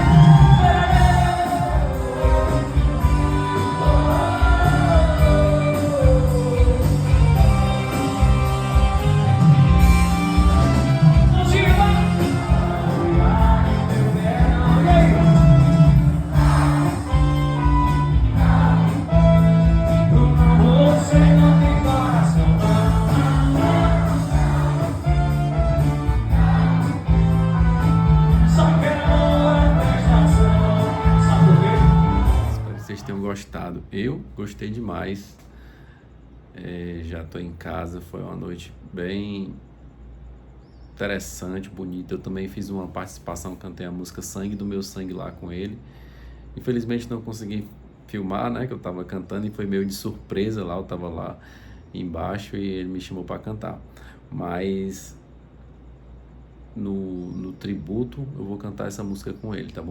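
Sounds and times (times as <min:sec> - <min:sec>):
pulsing bass beat: 0:00.0 - 0:32.6
band playing with singer: 0:00.0 - 0:32.8
guitar: 0:00.0 - 0:33.3.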